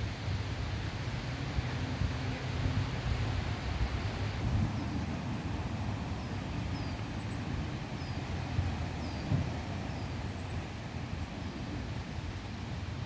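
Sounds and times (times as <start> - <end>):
rain hissing: 4.4 - 13.0.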